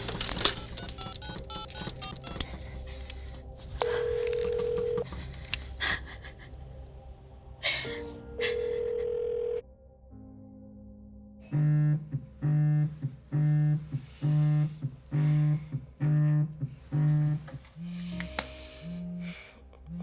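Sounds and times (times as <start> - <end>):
telephone ringing tone: 3.8 - 5.1, 8.6 - 9.6.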